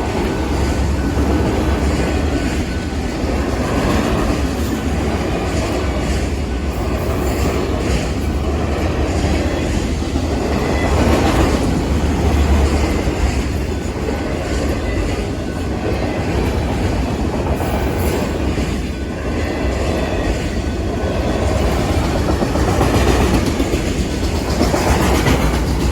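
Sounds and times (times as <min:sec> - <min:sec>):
freight train rumbling past: 0:00.0 - 0:25.9
wheels clicking over rail joints: 0:00.0 - 0:25.9.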